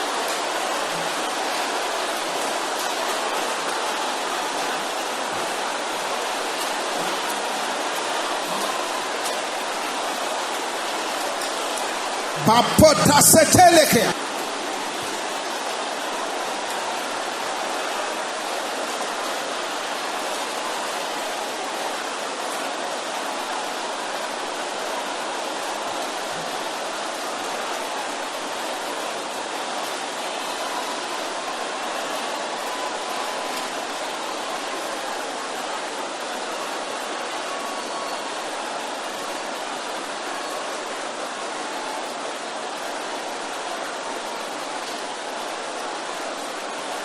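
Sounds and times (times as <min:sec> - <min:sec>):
congregation praying aloud: 0:12.3 - 0:14.2.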